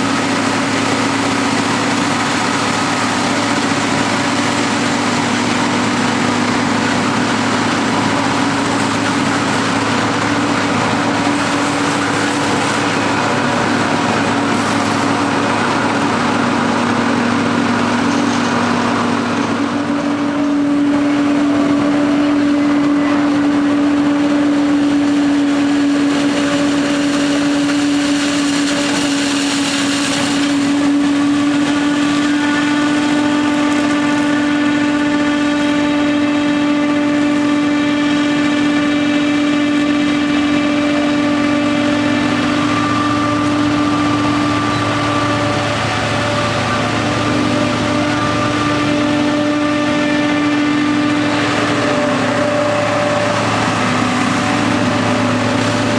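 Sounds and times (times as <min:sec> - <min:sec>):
harvester machine drone: 0:00.0 - 0:55.9
higher steady machine tones: 0:00.0 - 0:55.9.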